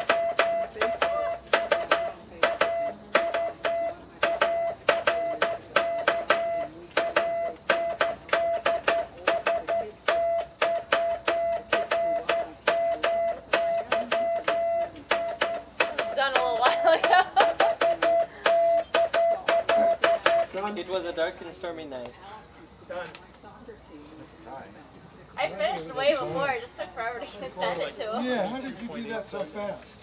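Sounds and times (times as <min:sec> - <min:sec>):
morse code beeps: 0:00.0 - 0:16.7, 0:17.4 - 0:20.6.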